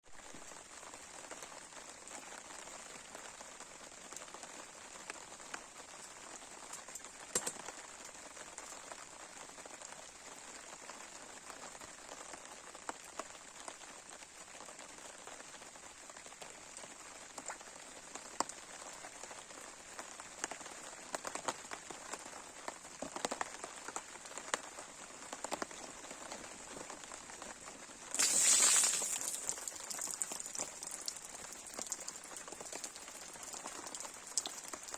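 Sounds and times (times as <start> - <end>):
fire crackling and popping: 28.1 - 34.9
bonfire hissing: 28.2 - 32.0.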